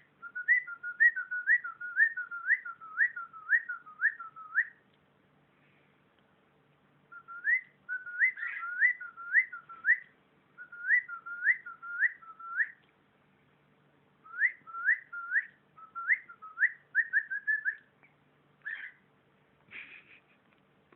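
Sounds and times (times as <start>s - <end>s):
cockatiel whistling: 0.2s - 4.8s, 7.1s - 12.8s, 14.2s - 17.9s, 18.6s - 19.0s.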